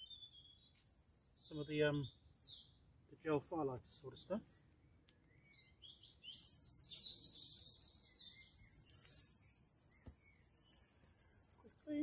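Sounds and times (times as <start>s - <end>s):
songbirds chirping: 0.0s - 12.0s.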